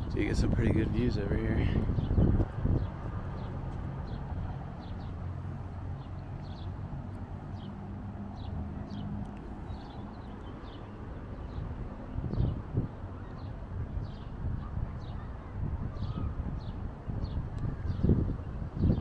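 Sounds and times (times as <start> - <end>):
small birds chirping: 0.2 - 19.0.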